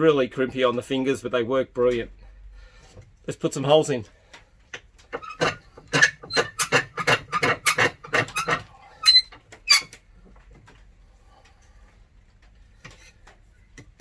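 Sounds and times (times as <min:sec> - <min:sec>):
wooden block clamped in metal vise: 0:05.0 - 0:10.0.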